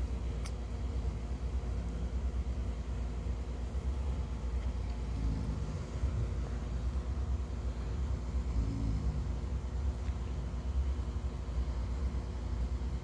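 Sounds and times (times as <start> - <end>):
steady low rumble: 0.0 - 13.0
person snoring softly: 5.0 - 6.4, 8.2 - 9.6.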